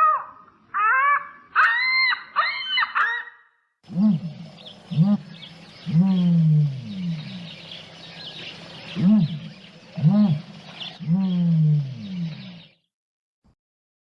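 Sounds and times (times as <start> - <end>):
faint bird chirps: 3.9 - 12.8
ostrich calling: 3.9 - 12.8.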